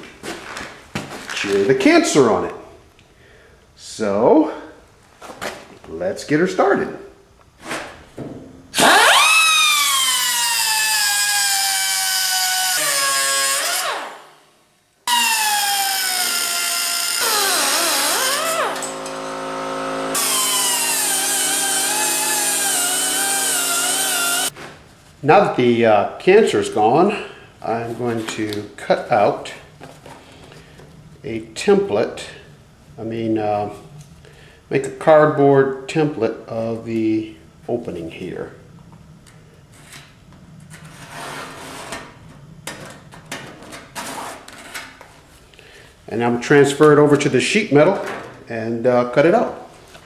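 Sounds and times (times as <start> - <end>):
power cutting tool whining: 8.8 - 14.4, 15.1 - 24.5
cardboard scraping rustles: 40.7 - 42.2.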